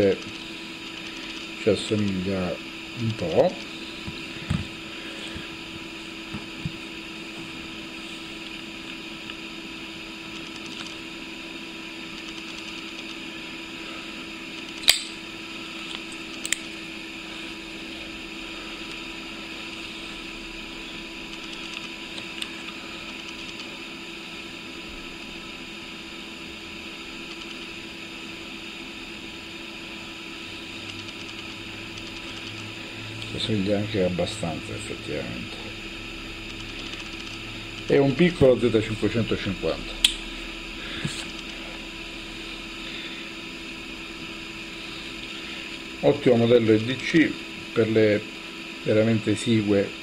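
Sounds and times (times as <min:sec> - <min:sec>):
steady hum with fixed tones: 0:00.0 - 0:50.0.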